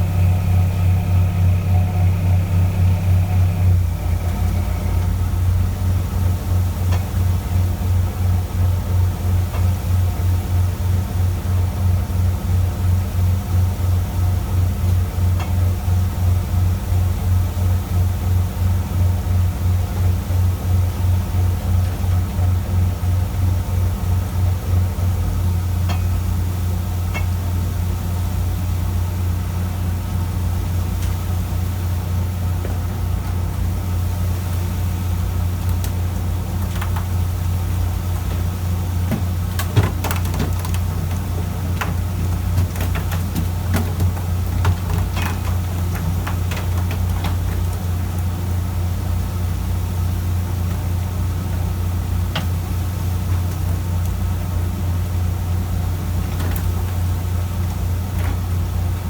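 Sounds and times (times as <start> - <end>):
boat engine droning: 0.0 - 7.9.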